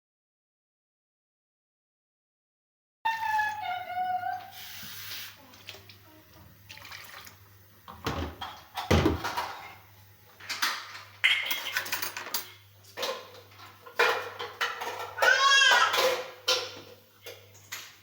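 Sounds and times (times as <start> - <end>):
water splashing: 6.6 - 7.4
dishes and utensils knocking: 7.9 - 9.8, 10.5 - 17.5.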